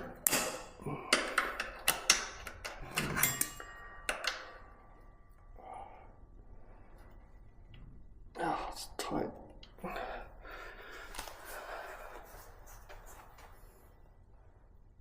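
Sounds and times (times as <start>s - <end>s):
pliers clicking on metal: 0.0s - 4.4s.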